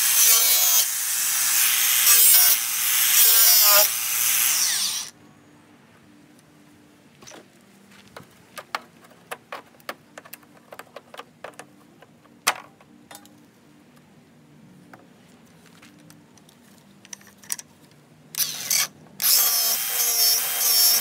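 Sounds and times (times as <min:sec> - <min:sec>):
faint steady hum: 0:05.0 - 0:19.2
hand tools clicking and tapping: 0:08.1 - 0:13.4.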